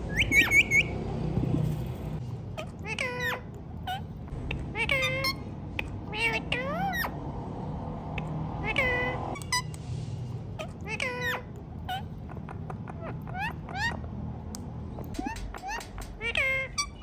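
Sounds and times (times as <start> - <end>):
parakeet calls bending in pitch: 15.2 - 17.0.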